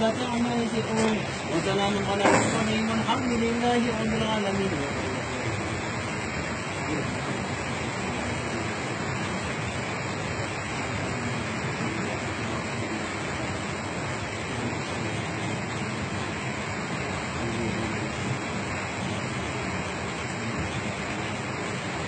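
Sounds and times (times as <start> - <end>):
water rushing: 0.0 - 22.0.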